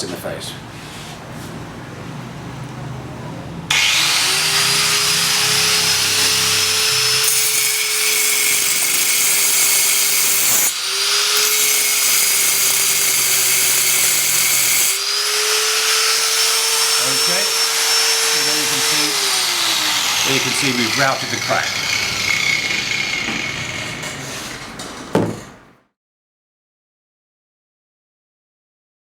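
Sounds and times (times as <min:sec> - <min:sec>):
power tool grinding concrete: 0:03.7 - 0:24.2.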